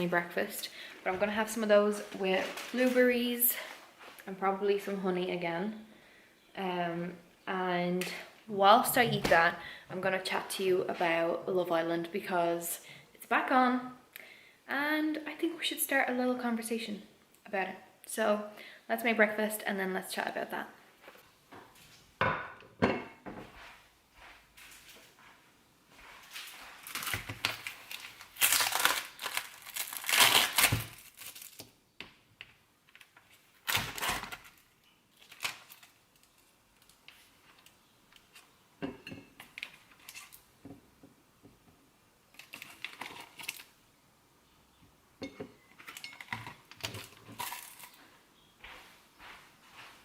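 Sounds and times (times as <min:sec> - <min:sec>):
plastic packaging crinkling: 0:26.8 - 0:31.7, 0:33.0 - 0:37.7, 0:42.3 - 0:43.8, 0:45.8 - 0:48.0.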